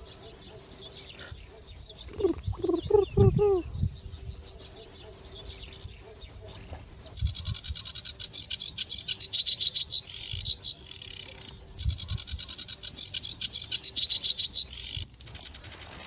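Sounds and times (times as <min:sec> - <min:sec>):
high-pitched chirping trills: 0:02.1 - 0:03.6.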